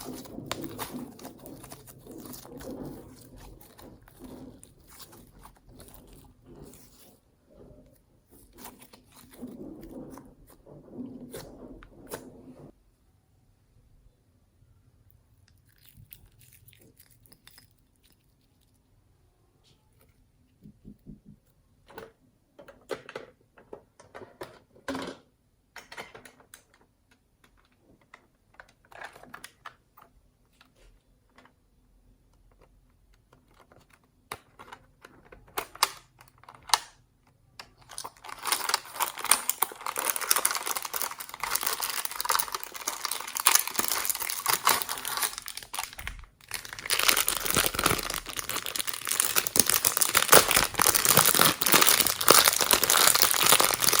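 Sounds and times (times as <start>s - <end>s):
slime clicking and crackling: 0.0s - 7.2s, 37.6s - 54.0s.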